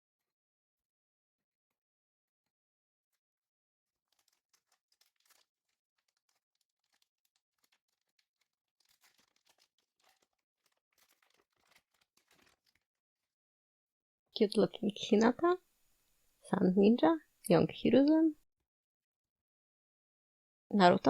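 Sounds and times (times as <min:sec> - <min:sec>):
foil wrapper crinkling and tearing: 0:04.0 - 0:12.9.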